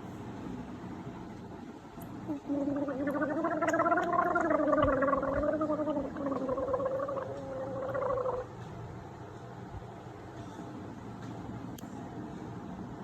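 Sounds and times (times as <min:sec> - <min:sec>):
person gargling water: 0:02.2 - 0:08.5.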